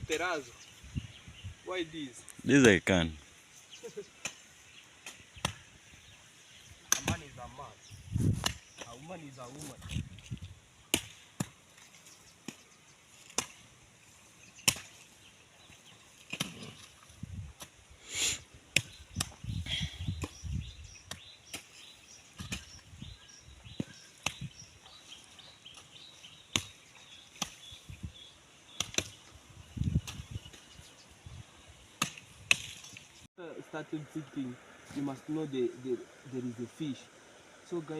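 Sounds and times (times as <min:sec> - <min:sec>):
hoe chopping into soil: 0:06.9 - 0:07.4, 0:08.2 - 0:09.0, 0:10.9 - 0:11.7, 0:13.2 - 0:13.7, 0:14.6 - 0:15.0, 0:16.2 - 0:16.9, 0:21.1 - 0:22.8, 0:23.7 - 0:24.6, 0:25.7 - 0:27.8, 0:28.7 - 0:30.6, 0:32.0 - 0:33.0.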